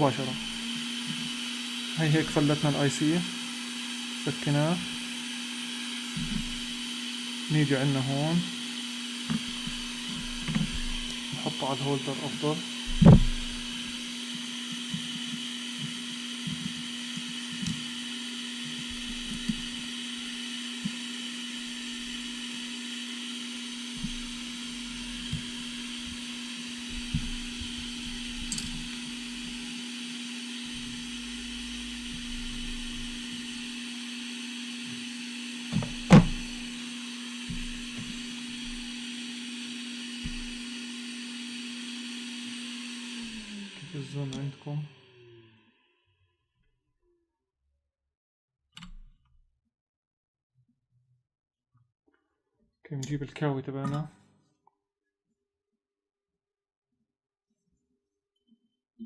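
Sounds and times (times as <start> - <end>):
hot-air station humming and hissing: 0.0 - 44.7.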